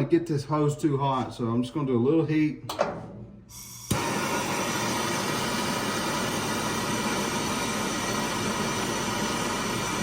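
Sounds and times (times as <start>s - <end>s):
blowtorch flame hissing: 3.9s - 10.0s.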